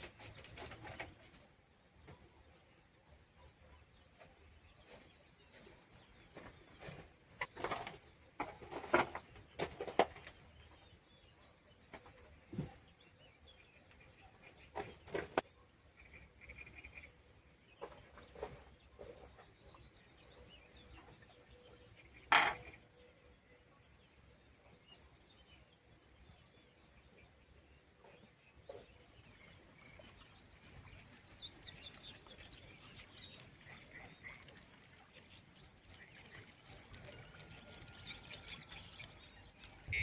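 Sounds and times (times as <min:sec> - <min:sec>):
birds calling: 0:03.4 - 0:40.0
high bird trills: 0:39.7 - 0:40.0.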